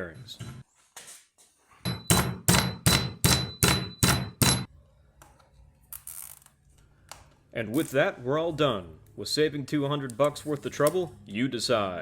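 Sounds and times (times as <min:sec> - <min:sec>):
metal being struck: 0:01.9 - 0:04.7.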